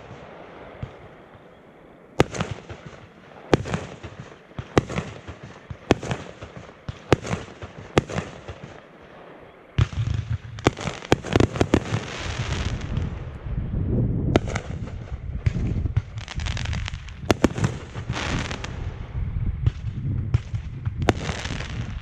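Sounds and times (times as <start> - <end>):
fireworks booming: 0.0 - 1.6, 2.2 - 22.0
low rumble: 12.2 - 22.0.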